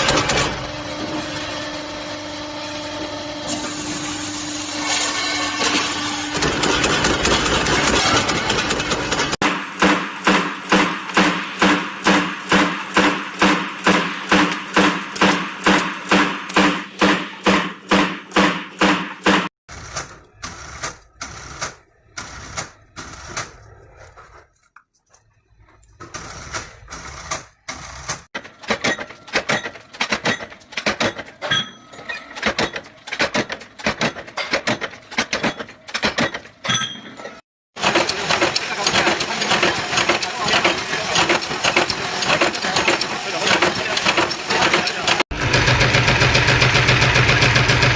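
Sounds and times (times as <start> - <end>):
fast dense machine clicking: 6.6 - 23.6, 37.8 - 47.9
machinery clattering rhythmically: 9.0 - 19.5, 37.8 - 47.9.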